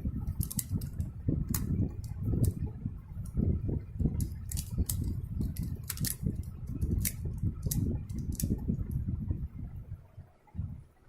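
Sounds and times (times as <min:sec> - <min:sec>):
low rumble of hands handling: 0:00.0 - 0:11.0
plastic puzzle pieces clicking: 0:00.3 - 0:01.7, 0:04.2 - 0:06.2, 0:06.8 - 0:08.5.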